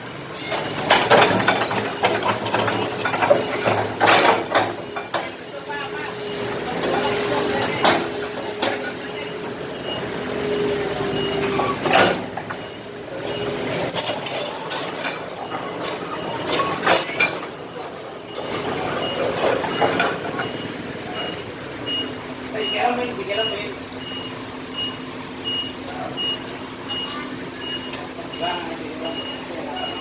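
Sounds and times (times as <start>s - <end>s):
excavator engine running: 0.0s - 30.0s
faint reversing beeper: 5.6s - 11.9s, 12.6s - 30.0s
metallic squeals of bucket scraping: 13.4s - 18.4s.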